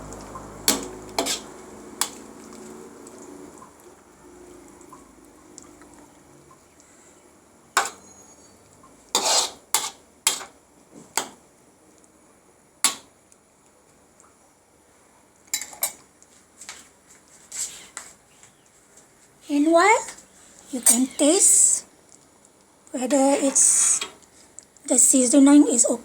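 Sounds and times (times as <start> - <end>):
metal utensil clinking against pot: 7.8 - 8.2.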